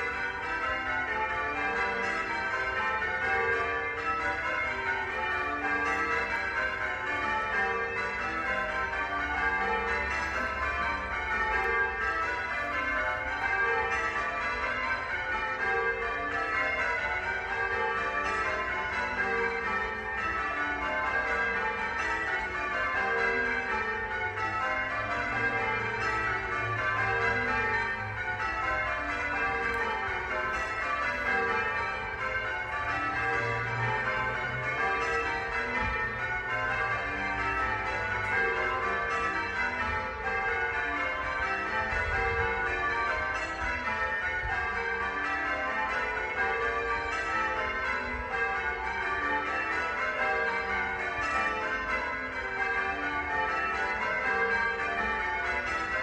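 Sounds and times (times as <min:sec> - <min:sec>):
church bells ringing: 0:00.0 - 0:56.0.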